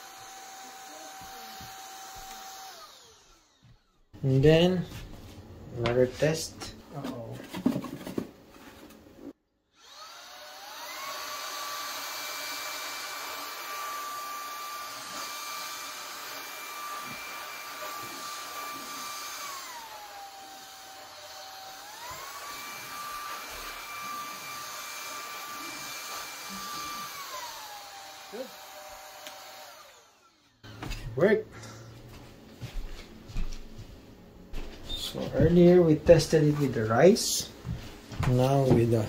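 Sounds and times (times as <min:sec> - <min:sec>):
vacuum motor high whine: 0:00.0 - 0:04.0, 0:09.8 - 0:31.3.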